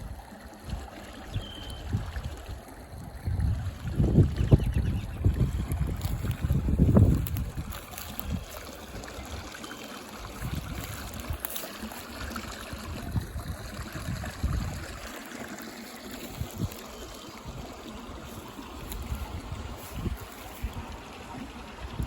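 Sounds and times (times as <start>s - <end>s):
water rushing over rocks: 5.2s - 22.0s.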